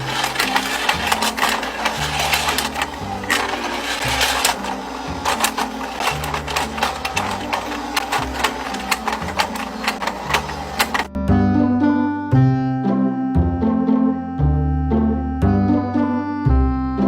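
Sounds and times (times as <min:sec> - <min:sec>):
background music with bass line: 0:11.1 - 0:17.0.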